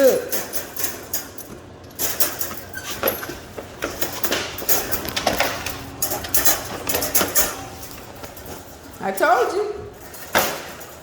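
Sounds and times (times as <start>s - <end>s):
clattering knocks and rattles: 0.4s - 9.2s, 9.9s - 11.0s.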